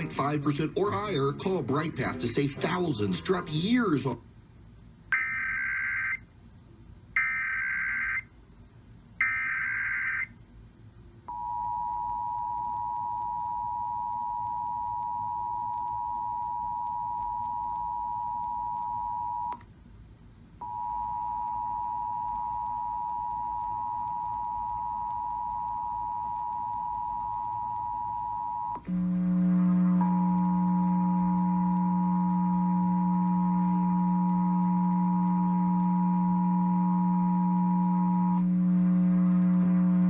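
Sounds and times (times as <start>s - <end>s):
click: 19.5s - 19.7s
two-tone attention signal: 20.6s - 39.9s.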